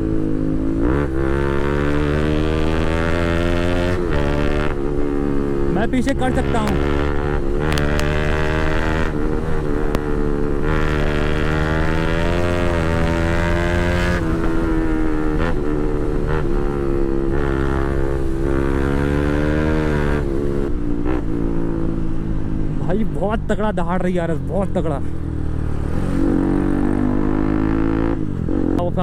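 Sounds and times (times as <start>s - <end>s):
motorcycle engine revving: 0.0s - 29.0s.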